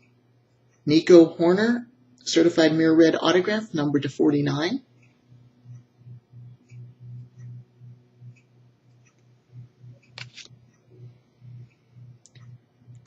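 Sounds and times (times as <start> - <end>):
soft ticks: 0.0 - 0.8, 4.9 - 5.9, 6.6 - 13.0
faint pulsing low hum: 0.0 - 13.0.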